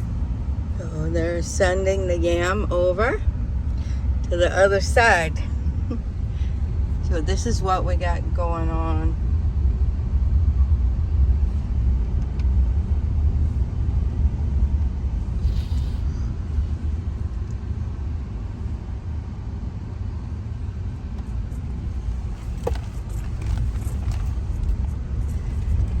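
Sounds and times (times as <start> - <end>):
car interior rumble: 0.0 - 26.0
brief hiss: 15.4 - 16.2.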